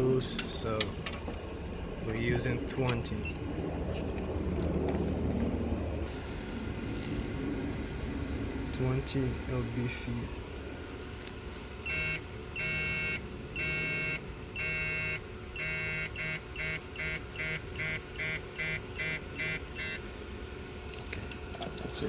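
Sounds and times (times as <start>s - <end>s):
torque wrench electronic beeps: 11.8s - 20.0s.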